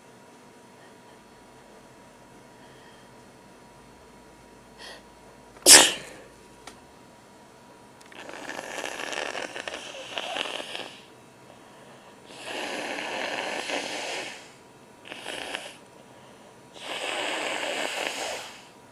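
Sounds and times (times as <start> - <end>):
nose blowing into tissue: 5.7 - 6.1, 8.2 - 11.0, 12.3 - 14.5, 16.8 - 18.7.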